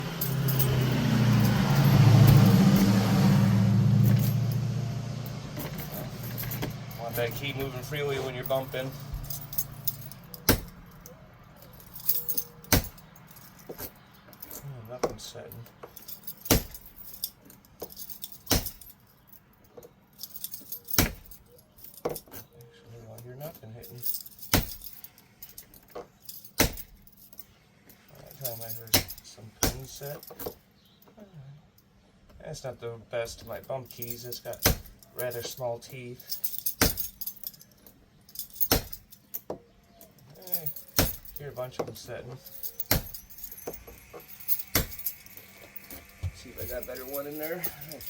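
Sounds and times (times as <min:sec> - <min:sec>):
vehicle engine droning: 0:00.0 - 0:18.9, 0:40.3 - 0:48.0
key ring jingling: 0:00.1 - 0:31.1, 0:33.4 - 0:48.0.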